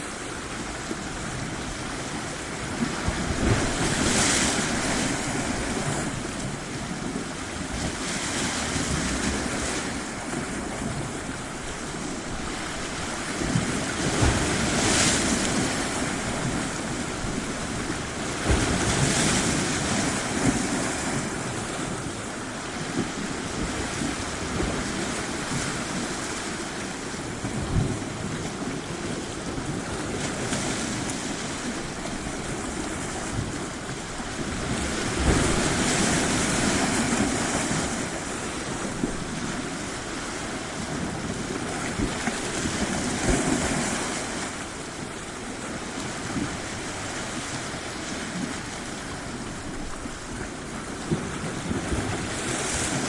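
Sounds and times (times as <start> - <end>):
surf washing onto shore: 0.0 - 53.0
wind bumps on microphone: 22.8 - 44.6.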